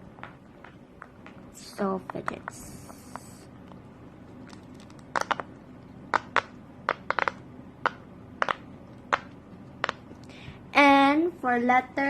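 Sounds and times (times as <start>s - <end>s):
fidget toy bubbles popping: 4.5s - 5.5s, 6.1s - 10.0s.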